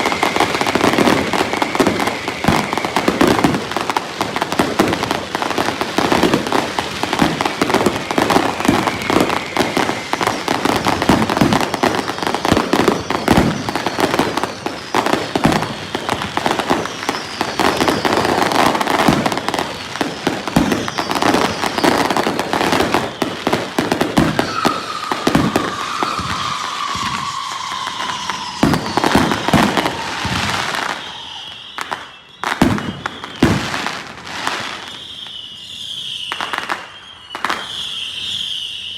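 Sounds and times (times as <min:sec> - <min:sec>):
firework bangs and crackling: 0:00.0 - 0:38.9
firework whistles: 0:00.0 - 0:38.9.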